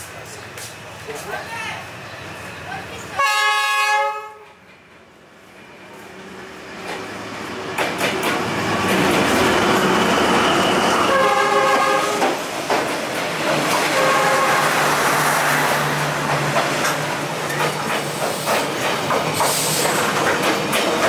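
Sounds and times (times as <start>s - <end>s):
train wheels rumbling on track: 0.0s - 21.0s
train horn blasts: 3.2s - 4.6s, 11.0s - 12.2s, 13.9s - 14.8s.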